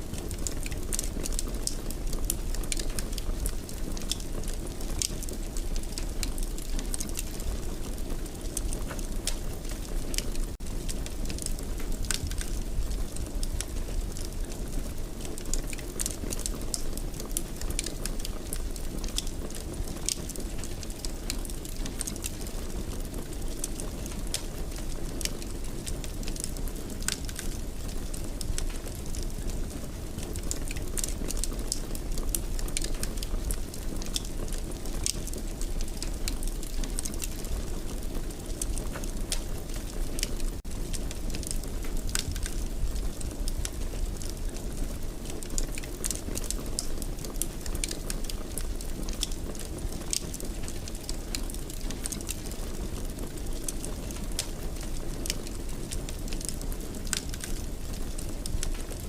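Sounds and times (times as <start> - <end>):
low rumble of flames: 0.0 - 59.0
wood fire crackling and popping: 0.0 - 59.0.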